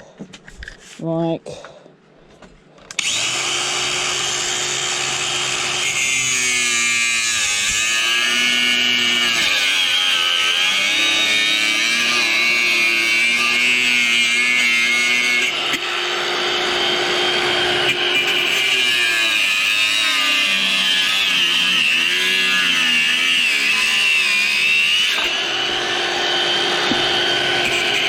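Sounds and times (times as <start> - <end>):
angle grinder cutting: 2.9 - 28.0.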